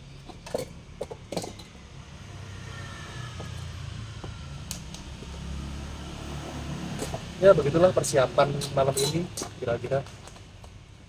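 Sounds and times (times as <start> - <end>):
knocks and clicks of handled items: 0.2 - 1.8.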